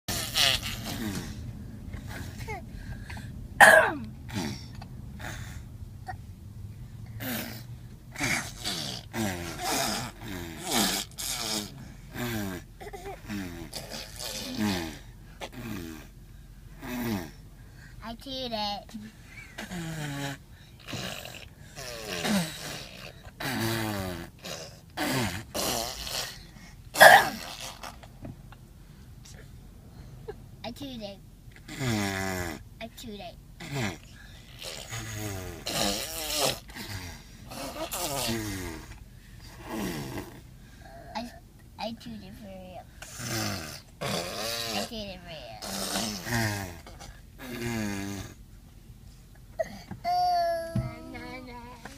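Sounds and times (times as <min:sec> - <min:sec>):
girls making fart noises with mouths: 0:00.1 - 0:01.4, 0:08.2 - 0:16.1, 0:16.8 - 0:17.4, 0:19.6 - 0:26.4, 0:31.6 - 0:32.6, 0:33.6 - 0:39.0, 0:39.6 - 0:40.5, 0:43.0 - 0:45.0, 0:45.6 - 0:48.4
children blowing raspberries: 0:00.1 - 0:03.2, 0:33.6 - 0:40.4, 0:45.6 - 0:48.4.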